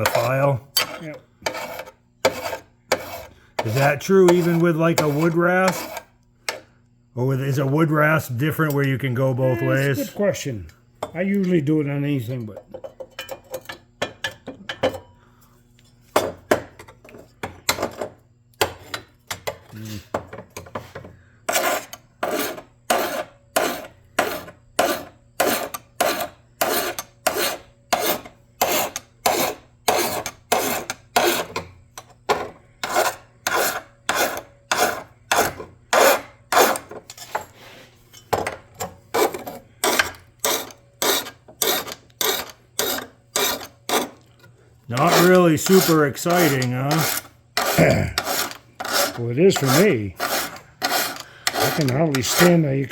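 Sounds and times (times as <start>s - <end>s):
hand file rasping: 0.0s - 6.6s, 21.4s - 37.9s, 39.1s - 44.3s, 44.9s - 52.9s.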